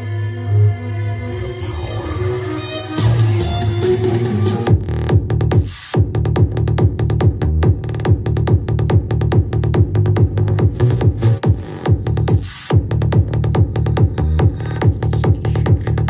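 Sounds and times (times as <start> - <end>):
electronic dance music: 0.0 - 16.0
heavy kick drum: 4.7 - 16.0.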